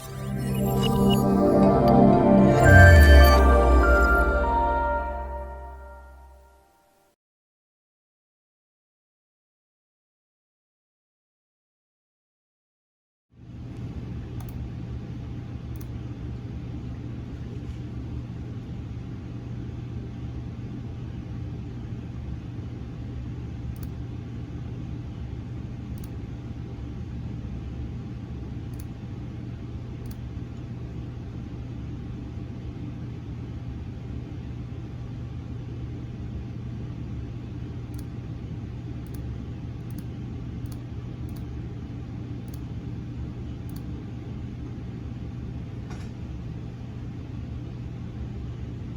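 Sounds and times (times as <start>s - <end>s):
mri scanner hum and rumble: 13.4s - 48.9s.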